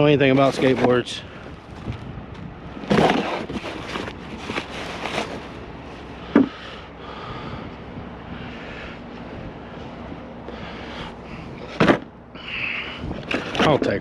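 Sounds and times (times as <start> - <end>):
rustling and clattering of items: 0.2 - 6.6, 13.2 - 14.0.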